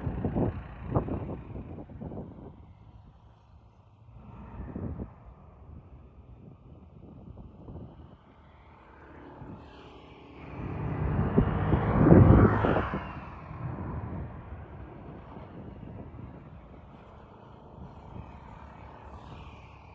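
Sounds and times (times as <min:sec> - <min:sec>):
motor vehicle passing by: 0:04.1 - 0:19.9.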